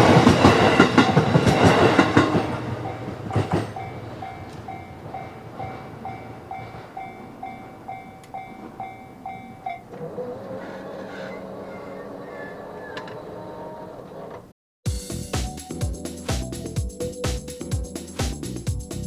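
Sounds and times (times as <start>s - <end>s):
train wheels clattering: 0.0s - 9.9s
level crossing warning bell: 0.0s - 10.0s.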